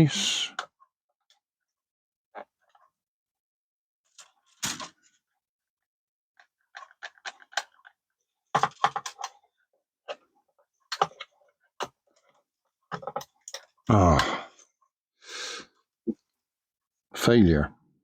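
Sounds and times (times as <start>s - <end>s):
plastic clicks and knocks: 6.7s - 9.4s, 10.9s - 12.0s, 12.9s - 13.7s.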